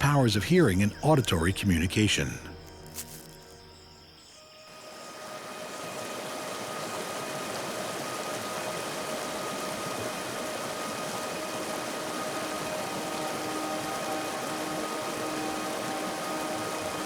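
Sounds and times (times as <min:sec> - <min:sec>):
faint background music: 0:00.0 - 0:17.0
rain hissing: 0:04.8 - 0:17.0.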